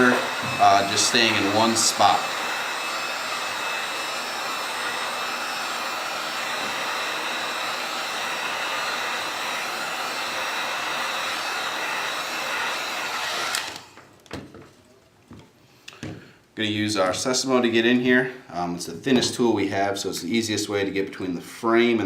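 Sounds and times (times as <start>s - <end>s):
heat gun blowing air: 0.0s - 14.0s.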